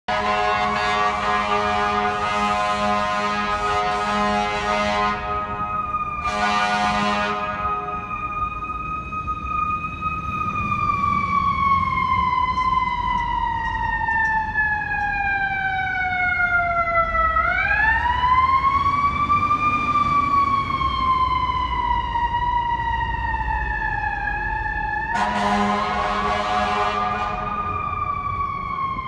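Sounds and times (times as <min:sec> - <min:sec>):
engine and traffic rumble: 0:00.1 - 0:29.0
fire truck siren wailing: 0:00.1 - 0:29.0.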